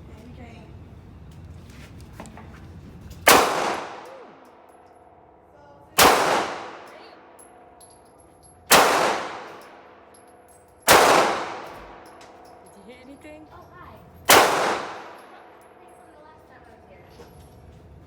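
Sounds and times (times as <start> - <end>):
gunshots with echo: 3.3 - 4.4, 6.0 - 7.4, 8.7 - 10.1, 10.9 - 12.2, 14.3 - 15.6.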